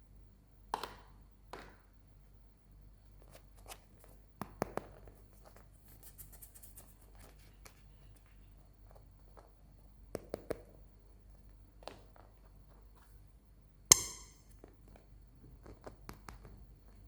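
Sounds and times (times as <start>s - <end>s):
taps and clicks on plastic toy: 13.9s - 14.4s.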